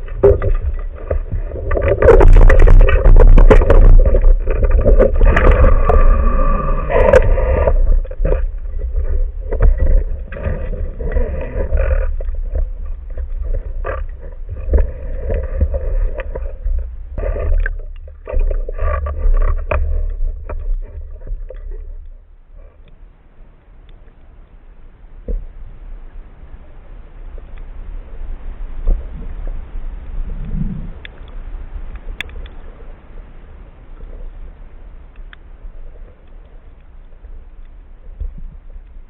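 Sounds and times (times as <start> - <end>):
heavy low rumble: 0.0 - 22.5
water rushing and gurgling underwater: 0.0 - 39.0.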